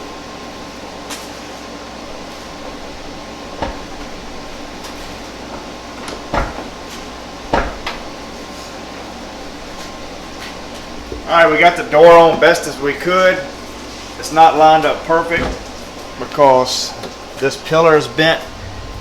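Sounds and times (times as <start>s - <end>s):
shop fan hum: 0.0s - 19.0s
knocks on truck door: 7.5s - 8.1s.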